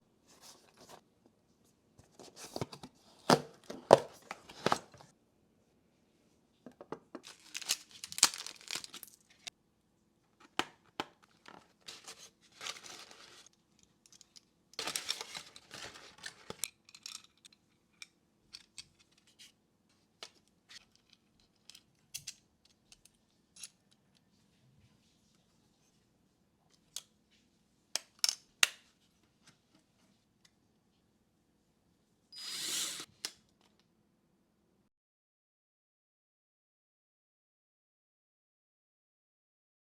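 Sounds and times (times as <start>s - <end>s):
packaging tearing and crinkling: 7.2s - 9.5s.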